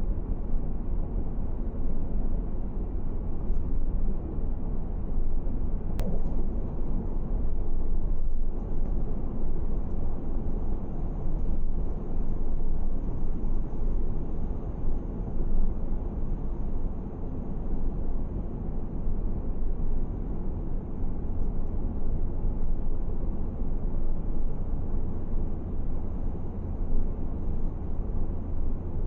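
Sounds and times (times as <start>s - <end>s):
road and wind noise: 0.0s - 29.0s
sharp click: 6.0s - 6.4s.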